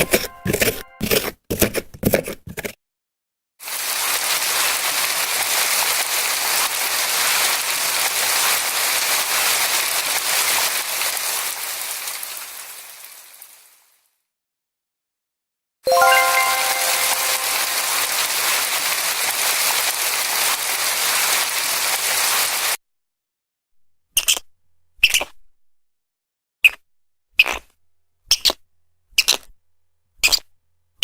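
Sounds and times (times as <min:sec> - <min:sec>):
steady rain: 0:03.6 - 0:14.1, 0:16.0 - 0:22.8.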